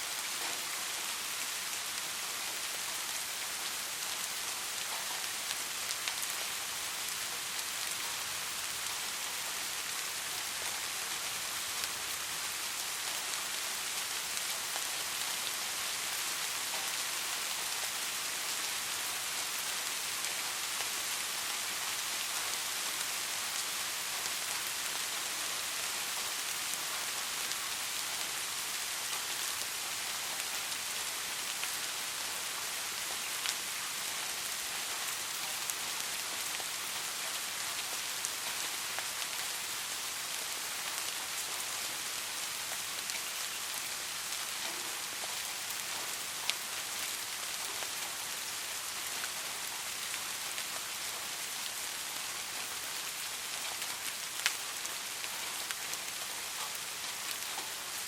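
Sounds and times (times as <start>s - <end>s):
steady rain falling: 0.0s - 58.0s.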